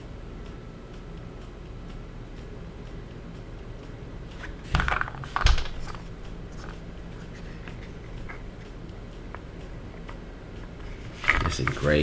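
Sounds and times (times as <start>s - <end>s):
rustling scrape: 10.8s - 11.9s.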